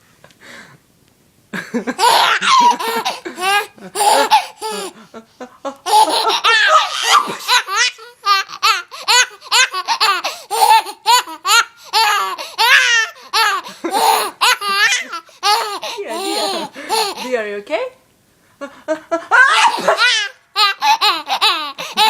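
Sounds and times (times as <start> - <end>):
baby laughing: 1.9 - 5.0, 5.8 - 17.3, 19.4 - 22.0.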